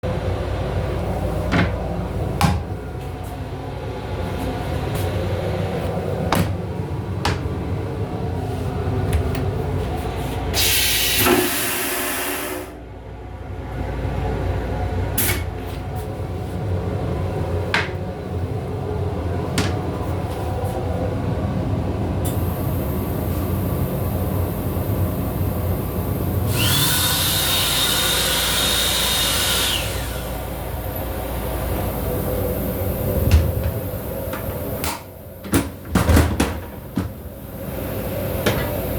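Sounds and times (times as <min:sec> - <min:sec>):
train car rumble: 0:00.0 - 0:11.6, 0:12.7 - 0:26.5, 0:30.1 - 0:38.9
air hiss: 0:10.6 - 0:12.8.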